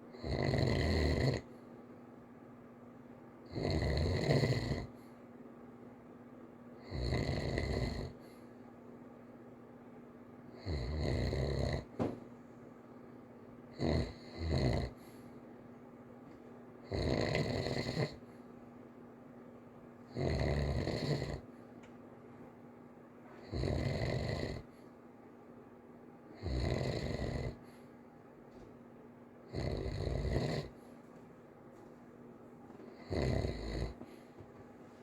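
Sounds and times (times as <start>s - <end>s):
child snoring lightly: 6.8s - 8.2s, 29.5s - 30.8s, 32.9s - 34.1s.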